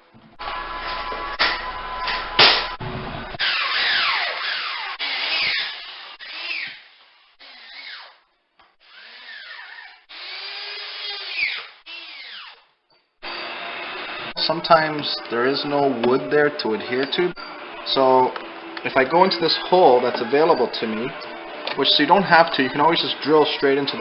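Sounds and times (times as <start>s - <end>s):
power drill whining: 3.3s - 8.2s, 8.8s - 12.6s, 13.2s - 22.6s.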